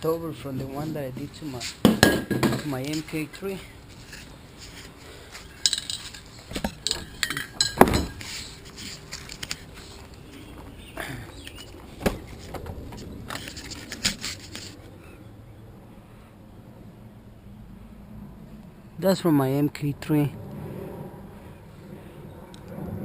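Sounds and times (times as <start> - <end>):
metal cans clinking together: 5.5 - 8.5.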